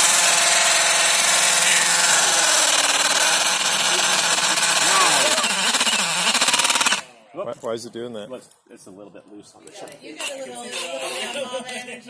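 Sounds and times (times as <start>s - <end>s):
cordless drill boring into ground: 0.0s - 7.1s.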